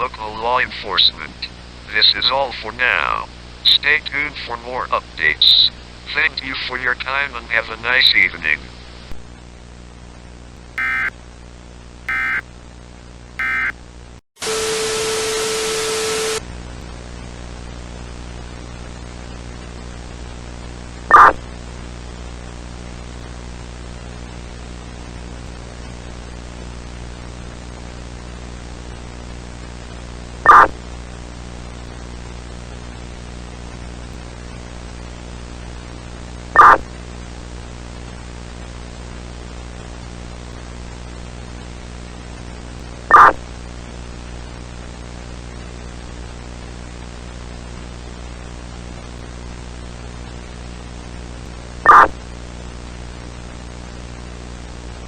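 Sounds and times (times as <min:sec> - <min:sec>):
loud static with low tone: 0:08.9 - 0:11.1, 0:11.8 - 0:12.4, 0:13.0 - 0:55.0
digital header tone bursts: 0:10.8 - 0:11.1, 0:12.1 - 0:12.4, 0:13.4 - 0:13.7, 0:43.1 - 0:43.4, 0:51.9 - 0:52.1
static hiss with hum: 0:10.8 - 0:11.1, 0:12.1 - 0:12.4, 0:13.4 - 0:13.7, 0:14.4 - 0:16.8.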